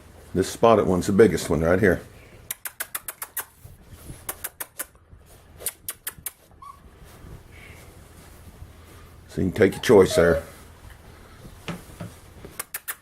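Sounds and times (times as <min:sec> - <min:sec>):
puppy toenails clicking on floor: 0:02.4 - 0:07.4, 0:10.8 - 0:13.0.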